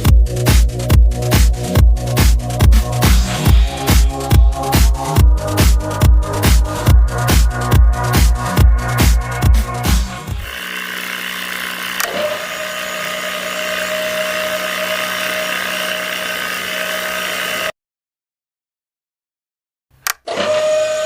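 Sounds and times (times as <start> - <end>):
small electric motor whining: 10.2 - 17.7, 20.3 - 21.0.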